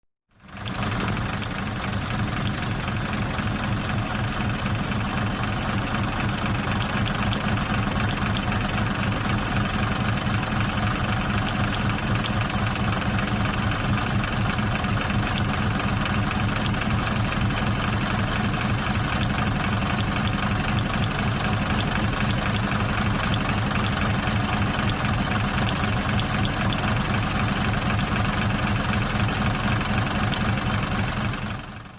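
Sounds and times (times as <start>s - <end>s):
car engine idling: 0.4s - 31.9s.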